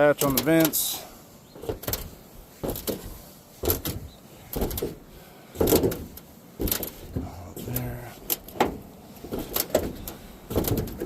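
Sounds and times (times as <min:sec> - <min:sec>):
footsteps on metal roof: 0:00.0 - 0:11.0.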